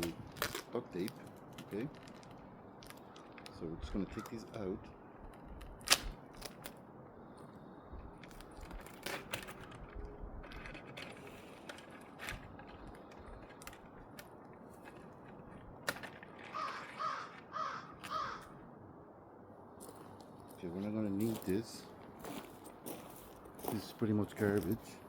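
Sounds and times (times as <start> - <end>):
hands clicking and crinkling plastic: 0.0 - 4.6, 8.2 - 18.2
crow cawing: 16.5 - 18.6.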